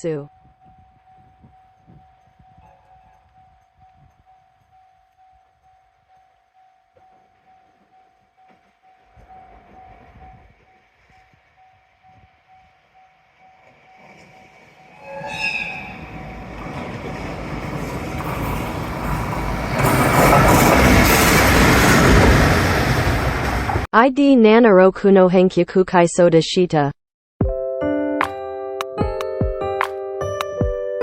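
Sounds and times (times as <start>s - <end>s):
train running noise: 0.0s - 23.9s
train horn blast: 14.9s - 16.1s.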